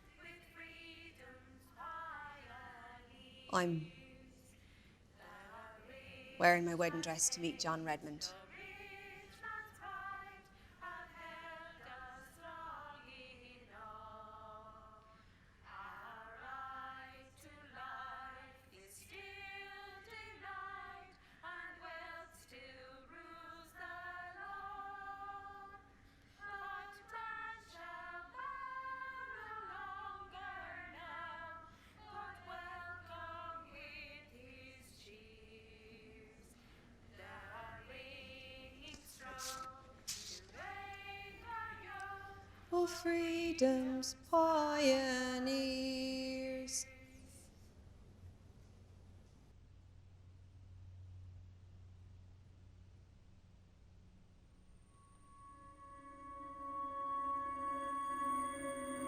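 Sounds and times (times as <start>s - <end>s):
woman singing unaccompanied: 0.0s - 4.4s, 5.2s - 15.0s, 37.2s - 47.3s.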